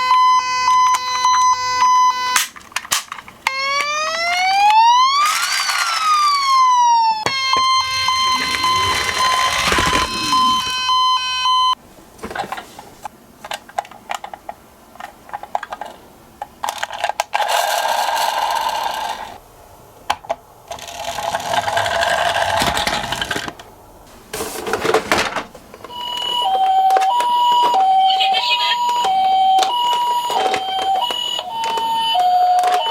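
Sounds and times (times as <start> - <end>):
plastic toy cars clicking: 2.4 - 6.6, 13.4 - 19.4, 20.1 - 23.7, 28.8 - 32.9
toy cars rattling down plastic slope: 2.6 - 10.8, 16.6 - 19.4, 20.7 - 23.6
toy electronic beeping: 3.5 - 4.6, 7.3 - 11.8, 25.9 - 32.9.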